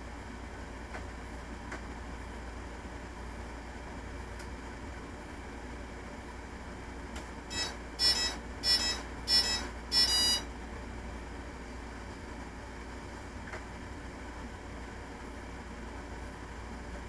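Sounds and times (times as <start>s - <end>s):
short electronic beeps: 7.5s - 10.5s.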